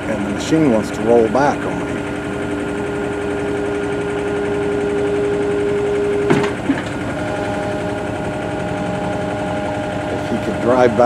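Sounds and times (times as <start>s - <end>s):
heavy machine engine running: 0.0s - 11.0s
short clunk: 6.2s - 7.0s.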